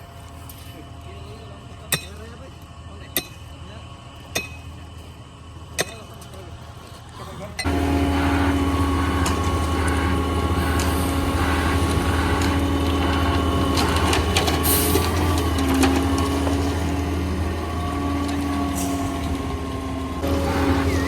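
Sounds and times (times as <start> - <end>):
truck engine running: 7.6 - 21.0.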